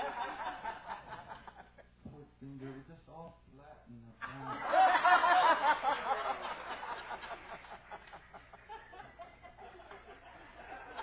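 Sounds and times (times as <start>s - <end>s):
audience laughing: 4.2s - 11.0s.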